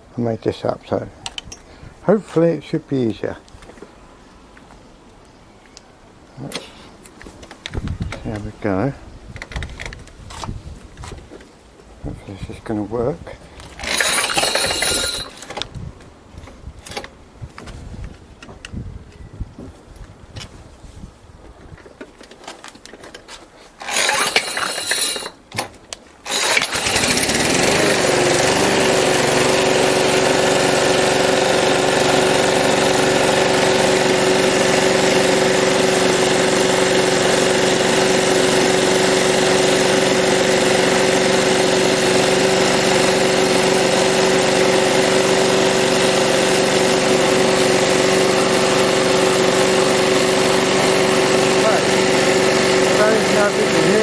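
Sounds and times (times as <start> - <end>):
lawn mower engine starting: 13.6 - 15.7, 23.7 - 54.0.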